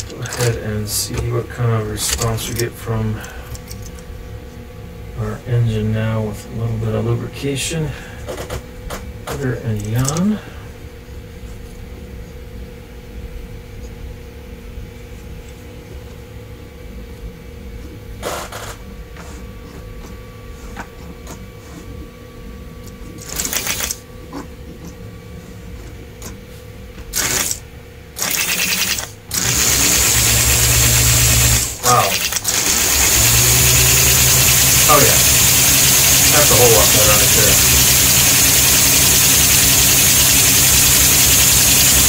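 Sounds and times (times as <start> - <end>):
toy train motor whirring: 23.2 - 24.0, 27.1 - 27.6, 28.2 - 42.0.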